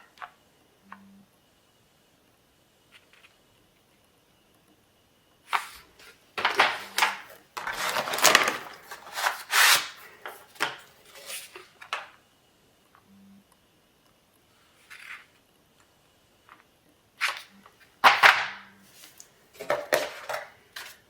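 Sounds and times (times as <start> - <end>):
plastic packaging scraping and clacking: 5.5 - 12.1, 17.2 - 21.0.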